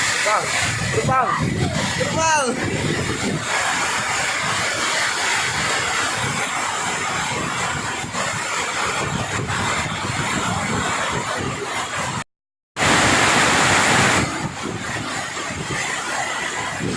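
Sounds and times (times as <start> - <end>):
heavy rain pouring: 0.0 - 12.2, 12.8 - 16.9
wind buffeting microphone: 0.2 - 12.2, 12.8 - 16.9.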